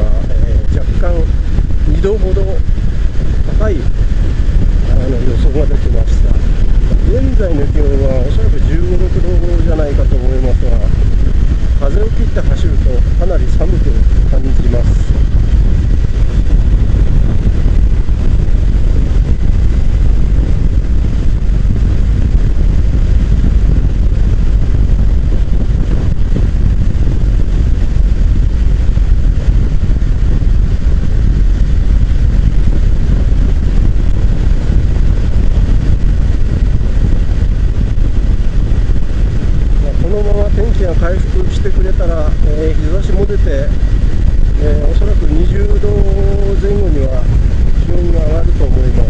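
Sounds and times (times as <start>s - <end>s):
wind buffeting microphone: 0.0s - 49.0s.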